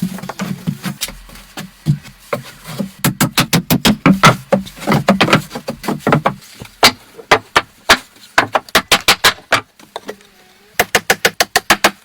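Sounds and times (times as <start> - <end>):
sharp knocks: 3.0 - 9.7.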